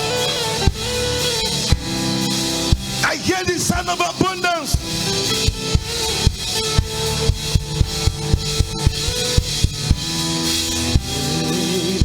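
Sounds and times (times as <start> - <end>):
drum kit steady beat: 0.0 - 12.0
worship band playing: 0.0 - 12.0.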